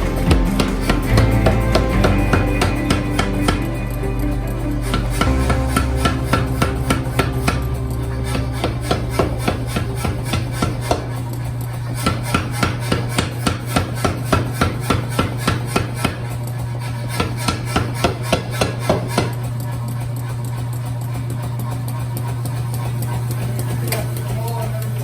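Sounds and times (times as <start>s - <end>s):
steady low hum: 0.0s - 17.1s
hammer striking hot iron: 4.9s - 19.5s.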